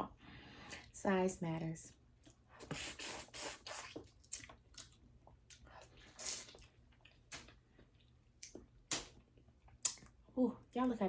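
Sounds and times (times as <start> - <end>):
wet squishing and chewing: 2.2 - 2.9, 3.6 - 10.2.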